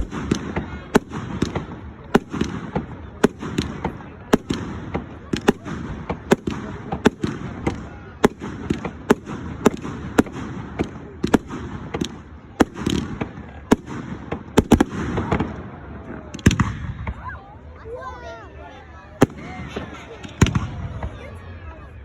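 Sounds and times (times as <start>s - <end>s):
fireworks crackling: 0.0s - 17.3s, 19.1s - 21.4s
fireworks bangs: 0.0s - 17.4s, 19.1s - 21.4s.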